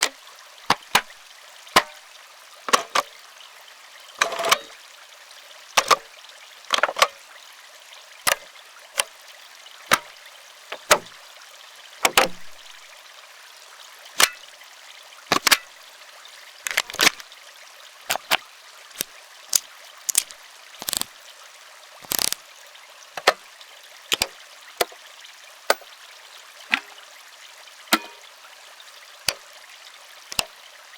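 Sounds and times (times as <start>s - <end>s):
buttons and switches clicking: 10.7s - 11.1s, 18.1s - 18.4s, 20.1s - 21.1s, 22.0s - 22.4s.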